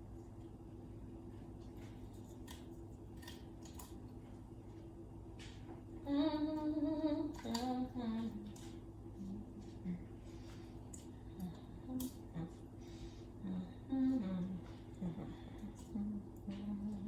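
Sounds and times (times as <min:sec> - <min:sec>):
woman humming: 0:06.0 - 0:08.6, 0:09.2 - 0:10.2, 0:11.4 - 0:12.7, 0:13.4 - 0:17.0.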